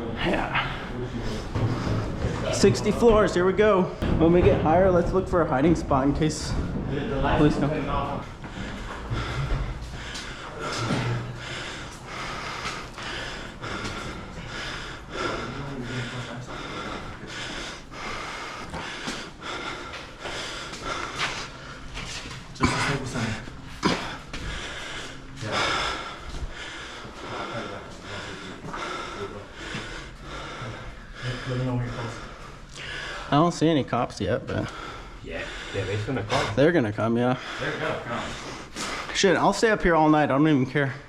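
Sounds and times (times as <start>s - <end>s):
person breathing hard: 0.2s - 3.2s, 5.7s - 33.5s, 34.5s - 36.7s, 37.3s - 39.5s
footfalls on stairs: 4.0s - 15.6s, 23.8s - 29.0s.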